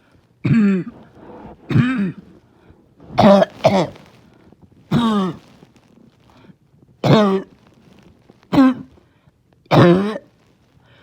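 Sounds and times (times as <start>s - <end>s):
person coughing harshly: 0.4s - 2.2s, 3.2s - 4.0s, 4.9s - 5.4s, 7.0s - 7.5s, 8.5s - 8.9s, 9.7s - 10.3s.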